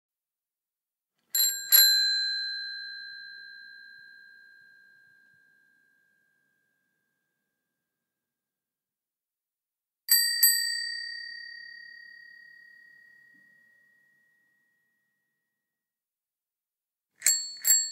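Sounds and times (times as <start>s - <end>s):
bicycle bell ringing: 1.3s - 5.1s, 10.1s - 13.8s, 17.2s - 17.9s.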